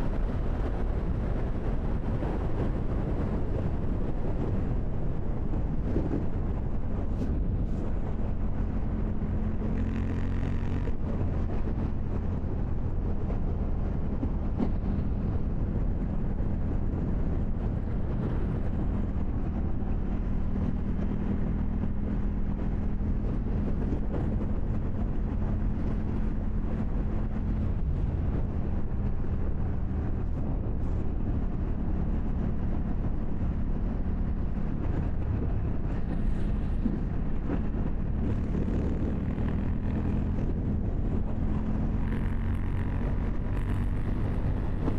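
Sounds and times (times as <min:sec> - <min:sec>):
motorcycle engine running: 0:17.4 - 0:44.9.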